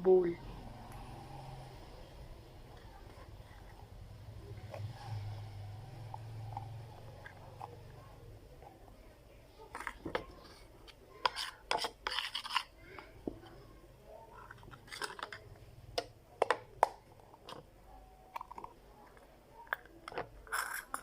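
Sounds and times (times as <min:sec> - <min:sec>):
plastic scraping a bowl: 0:09.6 - 0:13.5, 0:14.3 - 0:15.6
scratchy rubbing: 0:09.8 - 0:12.8.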